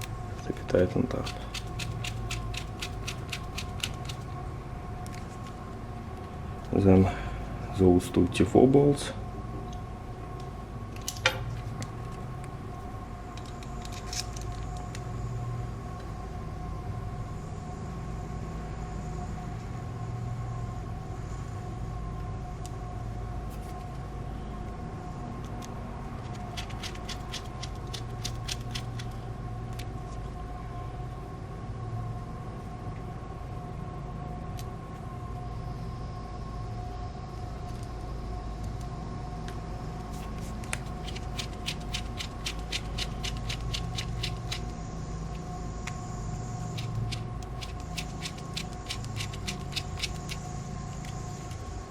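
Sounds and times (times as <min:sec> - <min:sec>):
mechanical hum with tones: 0:00.0 - 0:51.9
small tool clicking rapidly: 0:01.2 - 0:04.2, 0:26.3 - 0:29.2, 0:40.7 - 0:44.7, 0:46.7 - 0:50.5.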